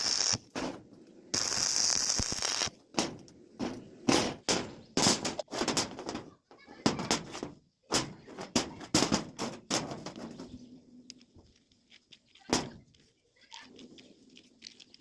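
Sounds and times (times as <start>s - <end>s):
steel parts knocking and clanking: 2.9s - 13.0s.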